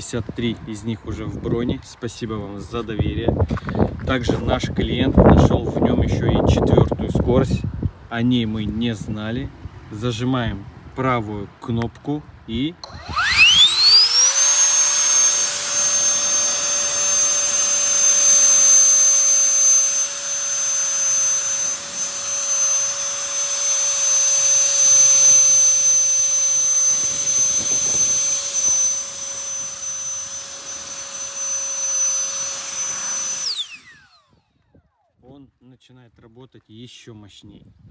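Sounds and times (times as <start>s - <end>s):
electric blower whining: 12.8s - 35.1s.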